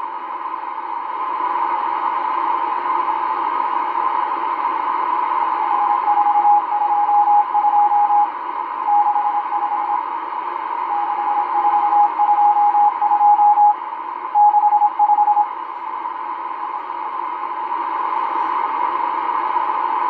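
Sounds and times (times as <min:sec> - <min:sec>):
morse code beat tone: 0:10.9 - 0:13.7, 0:14.4 - 0:15.4.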